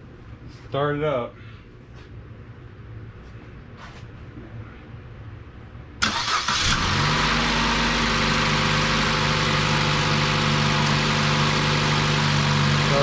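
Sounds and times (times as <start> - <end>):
car engine starting and idling: 6.0 - 13.0.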